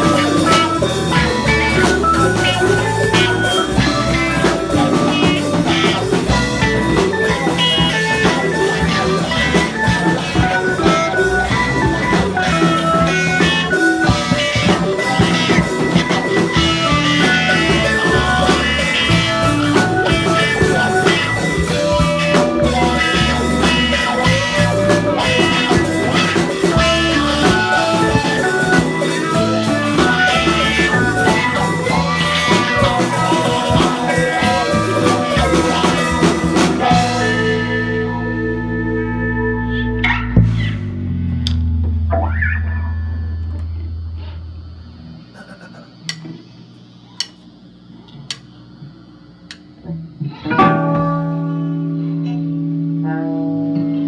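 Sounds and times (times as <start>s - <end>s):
drumming: 0.0s - 38.1s
rock band playing: 0.0s - 44.5s, 49.9s - 54.0s
bass line: 0.0s - 46.3s.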